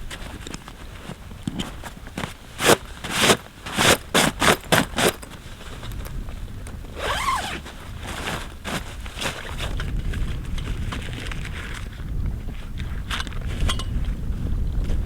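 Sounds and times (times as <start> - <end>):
wavering creak: 7.0 - 7.6.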